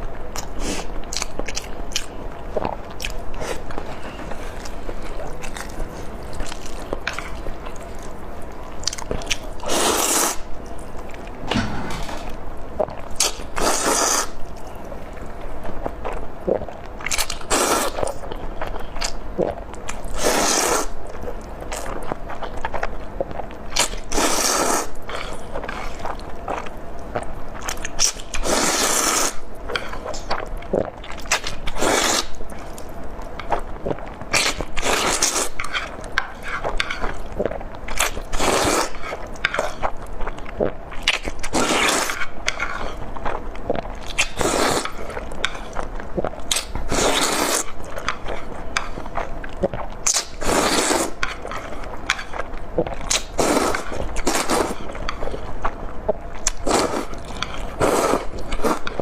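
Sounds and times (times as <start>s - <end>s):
person chewing crunchy food: 0.1s - 59.0s.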